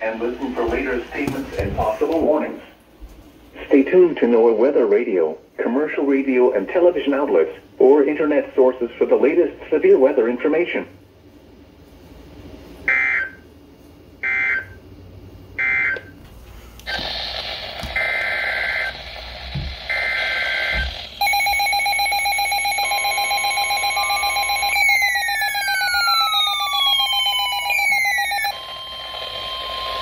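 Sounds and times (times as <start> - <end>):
static hiss: 16.7 - 21.2
harsh steady attention tone: 16.9 - 30.0.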